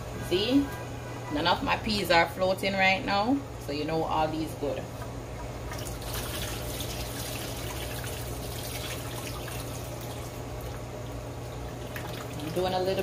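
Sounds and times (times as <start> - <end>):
tap water running into a pot: 5.8 - 12.8.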